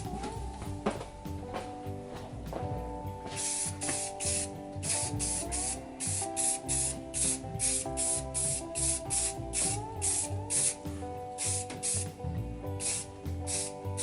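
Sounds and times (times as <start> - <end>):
background music: 0.0 - 14.0
spray can bursts: 3.4 - 5.3, 6.1 - 10.8, 11.5 - 12.0, 12.8 - 13.7.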